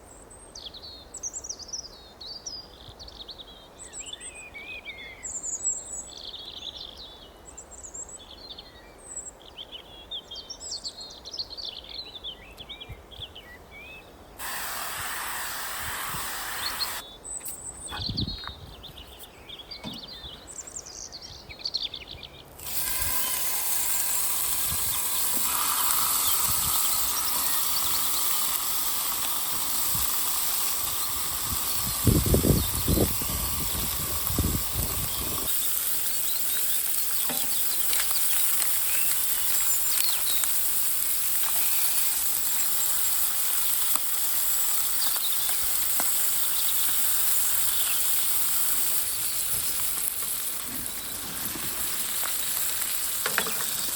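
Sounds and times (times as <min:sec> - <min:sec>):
loud hiss: 0:14.4 - 0:17.6, 0:22.6 - 0:53.9
bird chirps: 0:16.5 - 0:40.8, 0:41.4 - 0:43.8, 0:44.4 - 0:53.9.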